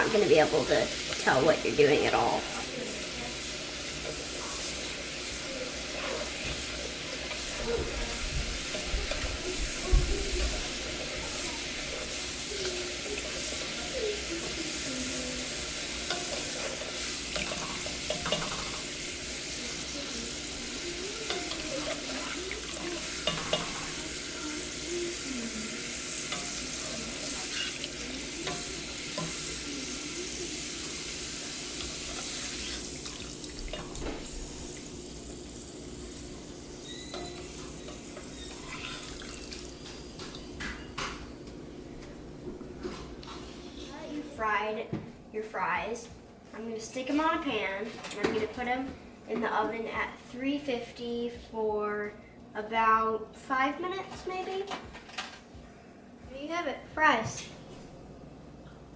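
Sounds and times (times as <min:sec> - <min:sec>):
fries sizzling in oil: 0:00.0 - 0:44.7.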